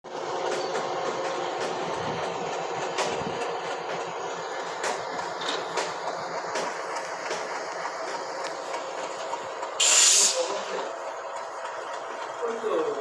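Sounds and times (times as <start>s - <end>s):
train rumbling: 0.1s - 13.0s
track clicks: 0.4s - 9.8s.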